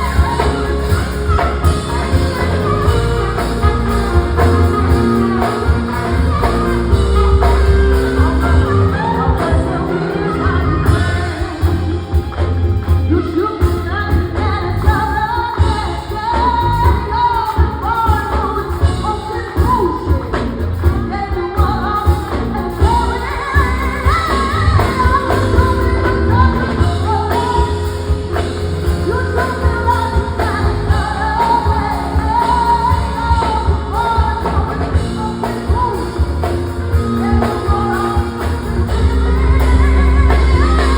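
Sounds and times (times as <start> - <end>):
lead vocal singing: 0.0 - 12.4
rock and roll band playing: 0.0 - 40.9.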